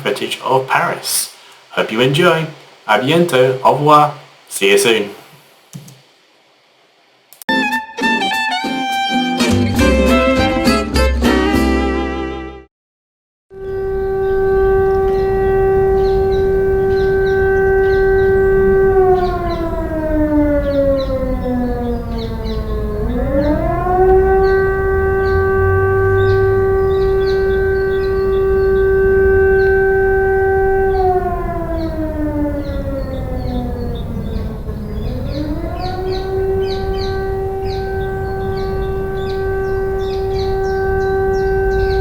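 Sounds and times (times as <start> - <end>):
air raid siren wailing: 13.5 - 42.0.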